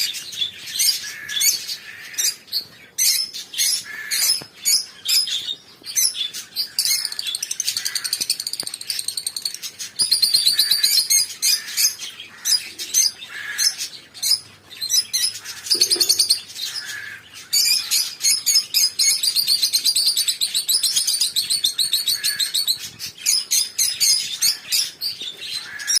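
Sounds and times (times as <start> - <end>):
birds chirping and chattering: 0.0 - 26.0.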